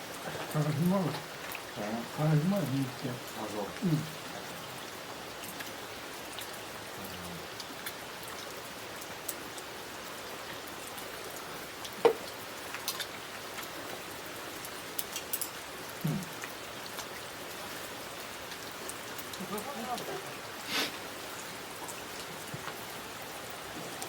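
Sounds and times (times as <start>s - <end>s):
steady rain falling: 0.0s - 24.0s.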